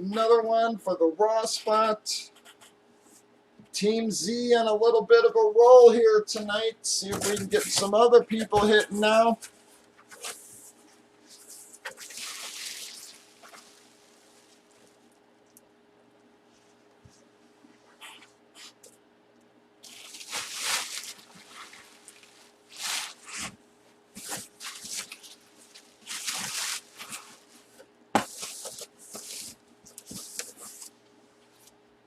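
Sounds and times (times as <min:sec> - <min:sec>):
packaging rustling and crinkling: 0:08.6 - 0:15.1, 0:19.8 - 0:23.6, 0:24.2 - 0:31.0.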